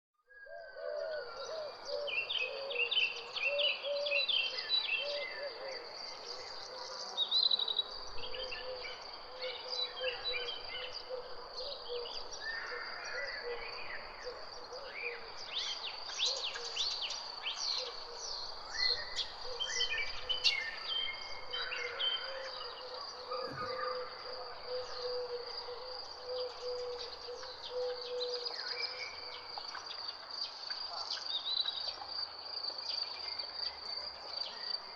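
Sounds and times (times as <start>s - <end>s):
birds chirping and singing: 0.3s - 32.1s.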